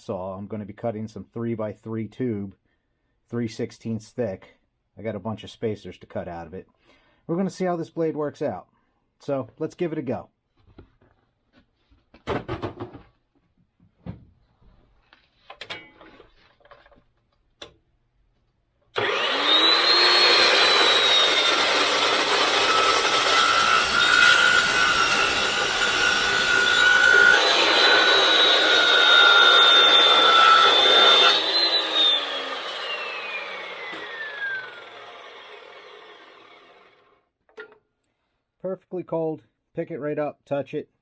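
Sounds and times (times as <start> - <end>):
chop saw cutting steel tube: 19.0 - 37.2.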